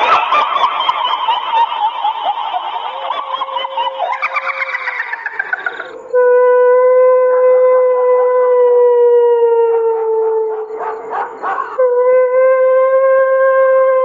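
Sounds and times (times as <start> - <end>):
eerie howling wail: 0.0 - 14.0.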